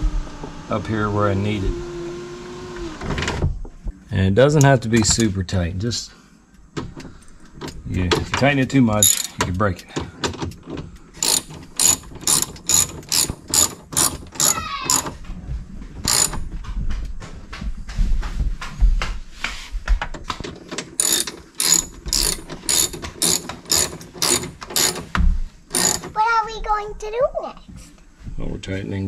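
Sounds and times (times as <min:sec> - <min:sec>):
handling noises: 0:06.7 - 0:26.2
ratchet wrench clicking: 0:09.0 - 0:09.6, 0:11.2 - 0:15.1, 0:16.1 - 0:16.4, 0:21.0 - 0:26.2.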